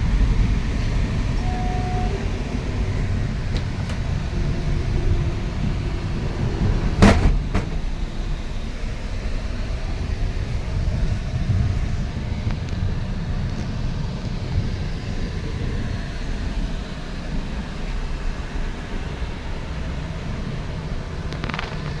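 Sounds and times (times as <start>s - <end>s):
train rumble from inside coach: 0.0s - 22.0s.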